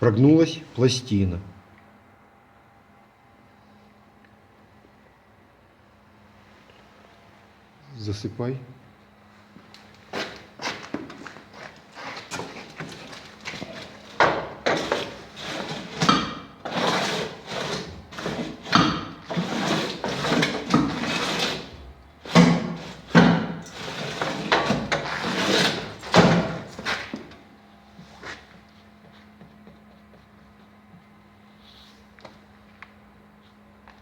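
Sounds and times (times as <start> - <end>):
scraping and knocking of brick mix: 10.1 - 27.4.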